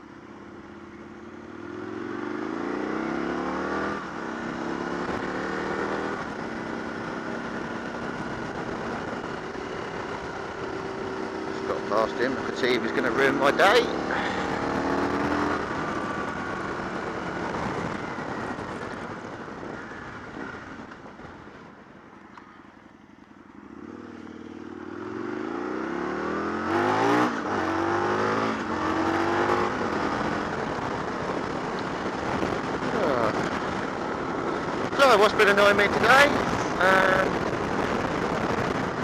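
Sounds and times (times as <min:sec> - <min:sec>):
motorcycle engine: 0:00.0 - 0:39.0
wind rush: 0:13.8 - 0:22.0, 0:26.7 - 0:39.0.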